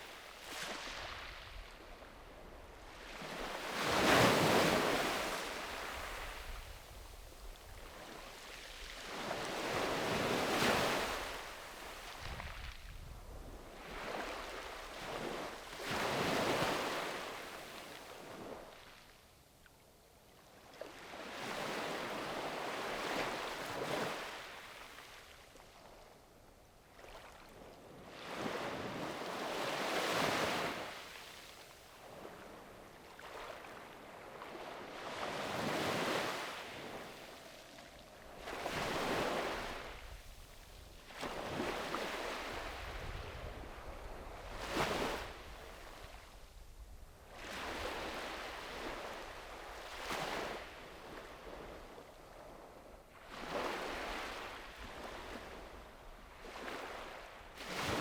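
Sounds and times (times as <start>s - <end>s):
sea waves breaking on beach: 0.0s - 1.6s, 2.9s - 6.6s, 38.3s - 40.2s, 41.1s - 46.2s, 47.3s - 51.8s, 56.4s - 58.0s.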